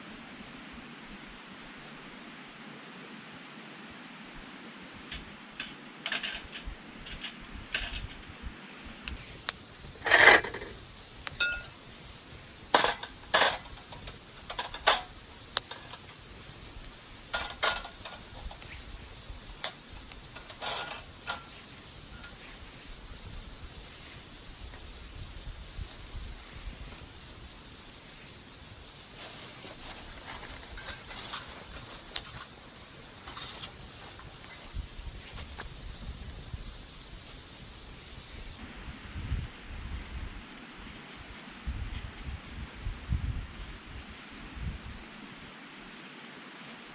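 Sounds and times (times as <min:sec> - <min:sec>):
metal clinking and knocking: 0:09.3 - 0:18.8, 0:29.1 - 0:36.2.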